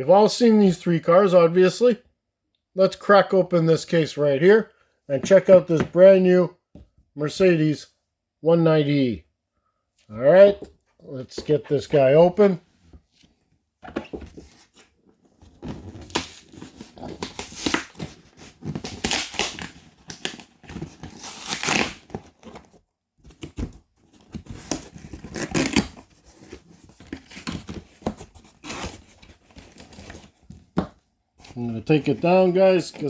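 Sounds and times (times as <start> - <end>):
packaging tearing and crinkling: 16.0 - 22.5.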